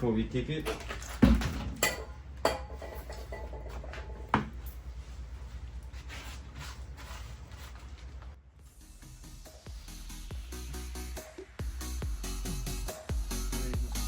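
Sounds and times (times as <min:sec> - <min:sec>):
parts clinking and clattering: 0:00.0 - 0:04.9.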